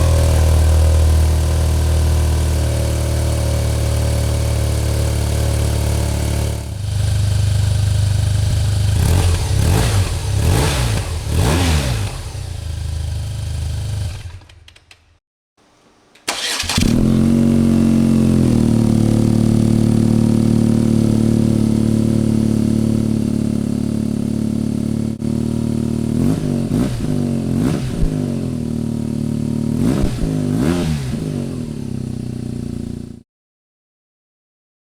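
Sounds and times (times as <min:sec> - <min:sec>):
motorcycle engine idling and revving: 0:00.0 - 0:14.8, 0:16.4 - 0:33.2.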